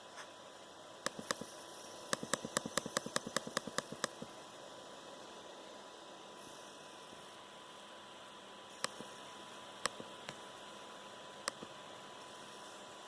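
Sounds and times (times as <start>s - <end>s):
laptop coil whine: 0.0s - 13.0s
sharp clicks: 1.0s - 1.5s, 2.1s - 4.3s, 8.8s - 9.0s.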